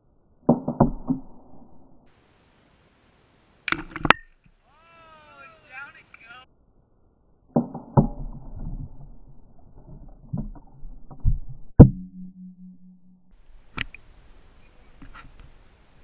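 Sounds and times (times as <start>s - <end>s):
sharp crack: 3.6s - 4.4s
low hum: 6.6s - 14.8s.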